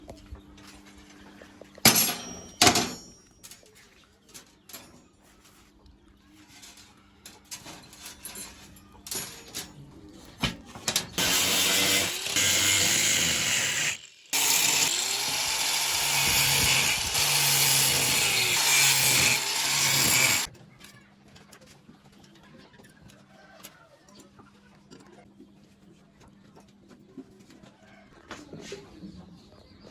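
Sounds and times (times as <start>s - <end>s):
handheld power tool running: 11.2s - 20.5s.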